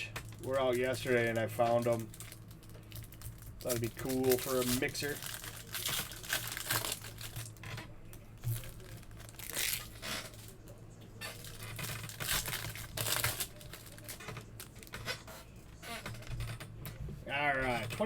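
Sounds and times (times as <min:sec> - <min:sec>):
steady low hum: 0:00.0 - 0:18.0
plastic and cardboard packaging tearing: 0:00.3 - 0:10.6, 0:11.2 - 0:16.3.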